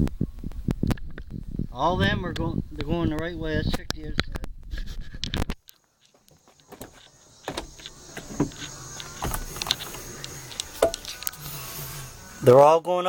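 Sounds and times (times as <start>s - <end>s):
solenoid valves clicking: 5.2s - 12.5s
compressed air hissing: 6.6s - 12.7s.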